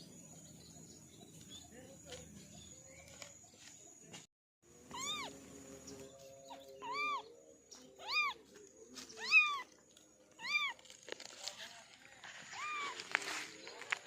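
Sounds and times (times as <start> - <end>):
kitten meowing: 4.9 - 5.3, 6.8 - 7.2, 8.0 - 8.4, 9.2 - 9.6, 10.4 - 10.8, 12.6 - 13.0.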